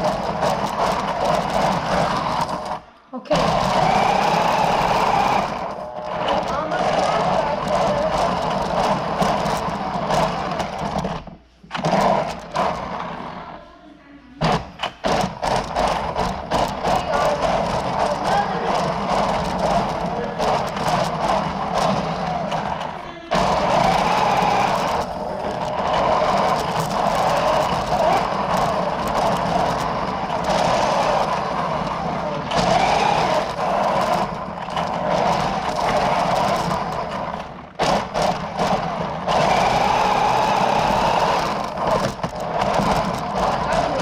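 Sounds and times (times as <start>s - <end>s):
toy car motor whining: 0.0s - 13.6s, 14.4s - 44.0s.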